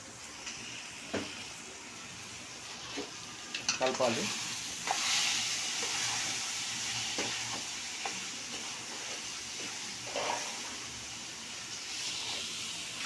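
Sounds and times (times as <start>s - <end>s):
food sizzling in a pan: 0.0s - 13.0s
spoon scraping a pan: 7.1s - 10.9s.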